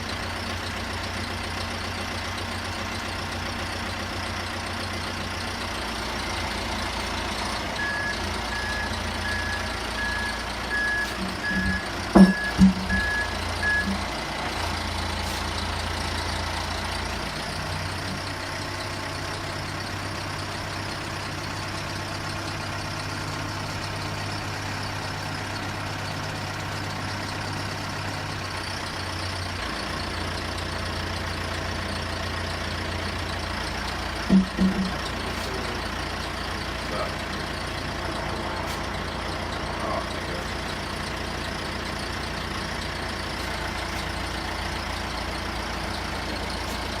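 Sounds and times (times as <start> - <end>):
truck engine idling: 0.0 - 47.0
short low beeps: 7.8 - 14.0, 34.3 - 35.0.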